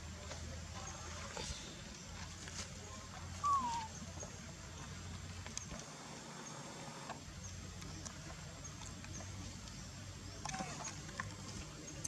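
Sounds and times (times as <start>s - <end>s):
low background hum: 2.9s - 5.8s
monkey squeak: 3.4s - 3.9s.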